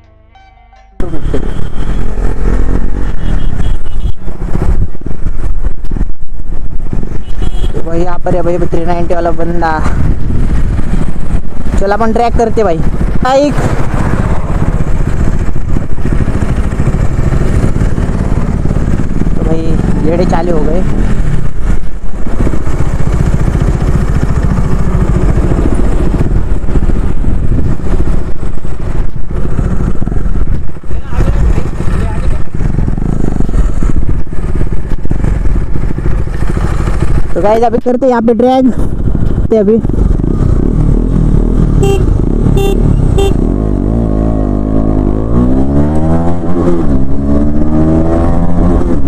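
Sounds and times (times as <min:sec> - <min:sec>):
horn beeps: 0:00.0 - 0:02.2, 0:41.8 - 0:43.5
motorcycle engine running: 0:00.0 - 0:49.0
wind rush: 0:01.0 - 0:49.0.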